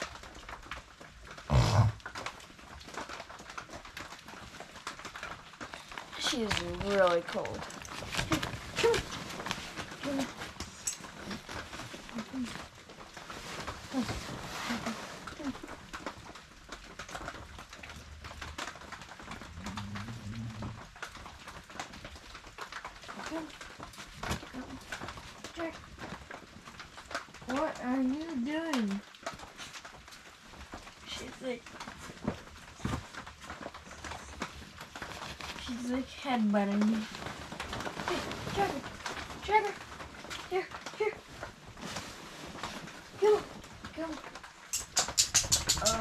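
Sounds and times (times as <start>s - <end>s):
rustling: 0.0s - 46.0s.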